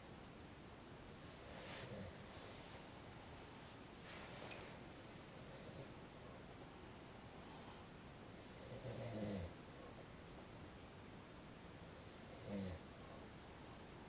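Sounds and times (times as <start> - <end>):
man snoring: 1.2 - 2.2, 5.0 - 6.0, 8.3 - 9.5, 11.8 - 12.8.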